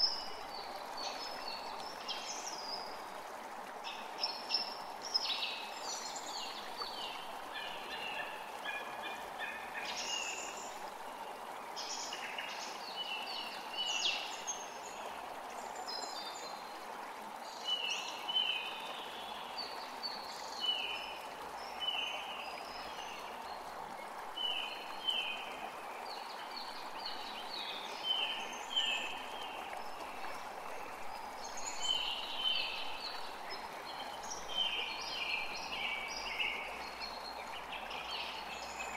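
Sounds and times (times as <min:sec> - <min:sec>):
creek running: 0:00.0 - 0:38.9
songbirds singing: 0:17.4 - 0:38.9.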